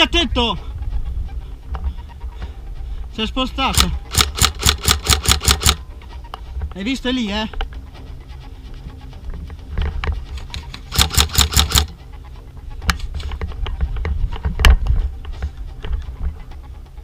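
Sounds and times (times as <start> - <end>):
airsoft rifle shots: 3.7 - 5.8, 10.9 - 11.9.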